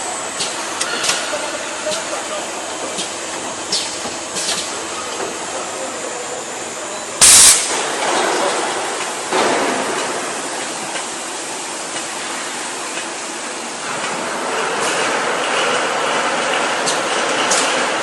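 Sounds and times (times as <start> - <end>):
grinder rushing hiss: 0.0 - 12.8.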